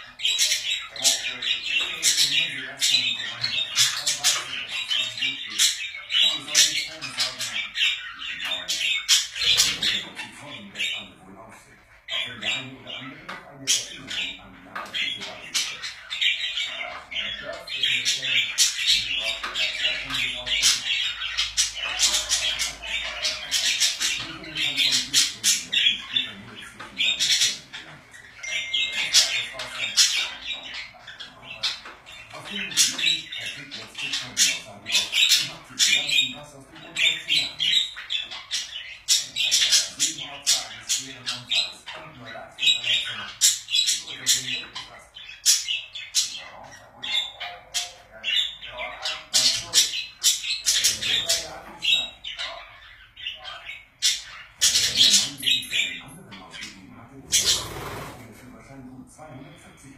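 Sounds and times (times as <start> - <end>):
budgerigars chattering and squawking: 0.0 - 59.9.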